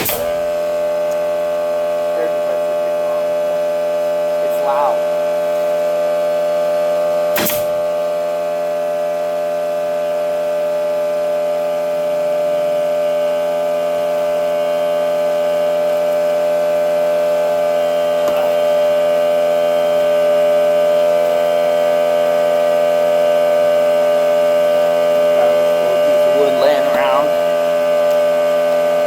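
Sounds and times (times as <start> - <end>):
air compressor running: 0.0 - 29.0.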